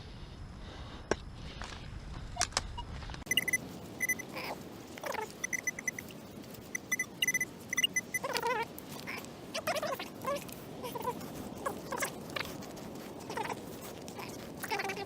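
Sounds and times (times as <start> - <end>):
metal detector pinpointer beeping: 3.3 - 4.3, 5.4 - 6.1, 6.7 - 8.5.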